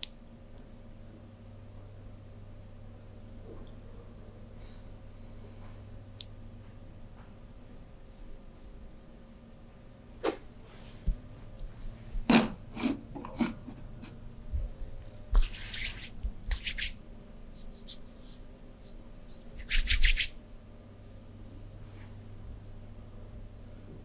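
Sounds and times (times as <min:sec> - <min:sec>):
hands slapping skin: 0:15.4 - 0:17.0, 0:19.3 - 0:20.3
hands rubbing skin: 0:15.4 - 0:20.4.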